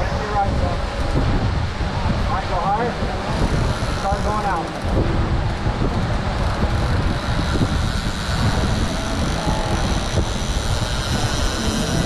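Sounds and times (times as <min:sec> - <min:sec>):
drone propellers whining: 0:00.0 - 0:12.0.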